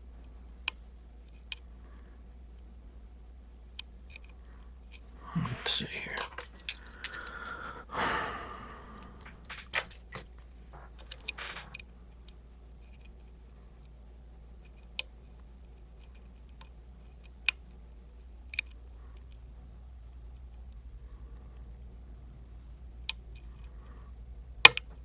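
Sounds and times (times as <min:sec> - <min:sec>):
lock picks clicking and scraping: 0:04.1 - 0:07.8, 0:08.8 - 0:11.8
metal clicks and rattling: 0:05.7 - 0:07.8, 0:08.8 - 0:13.3.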